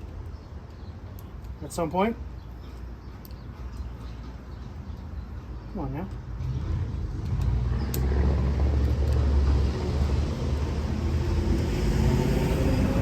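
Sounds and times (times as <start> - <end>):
vehicle engine rumbling: 5.8 - 13.0.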